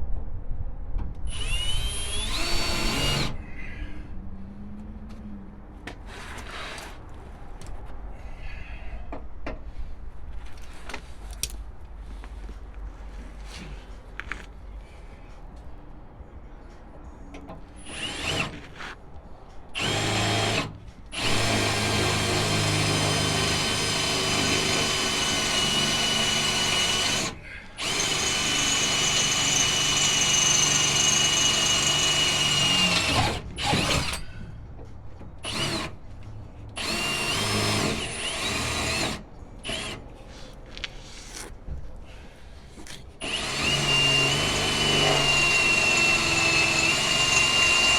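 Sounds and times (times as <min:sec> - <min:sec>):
electric drill boring into steel: 0:01.3 - 0:03.4, 0:17.9 - 0:18.5, 0:19.8 - 0:34.2, 0:35.4 - 0:36.0, 0:36.8 - 0:40.0, 0:43.2 - 0:47.9.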